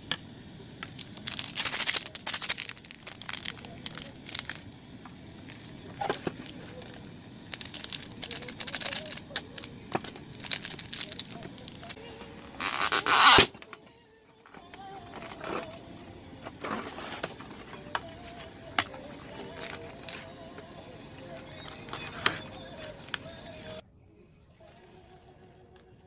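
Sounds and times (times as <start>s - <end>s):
rustling and crinkling: 0.8s - 15.8s, 16.4s - 23.8s
loud burst of rustling: 0.9s - 4.7s.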